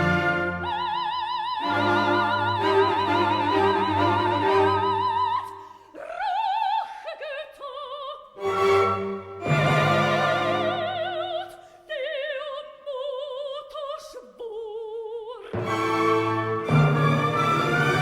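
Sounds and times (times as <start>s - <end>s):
orchestral accompaniment: 0.0s - 1.0s, 1.6s - 5.4s, 8.4s - 11.4s, 15.6s - 18.0s
operatic singing with vibrato: 0.0s - 18.0s.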